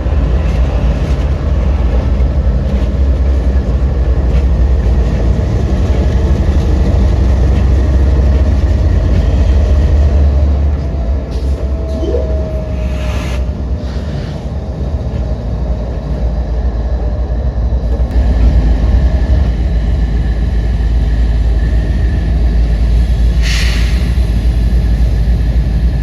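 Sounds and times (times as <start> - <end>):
freight train rumbling past: 0.0 - 26.0.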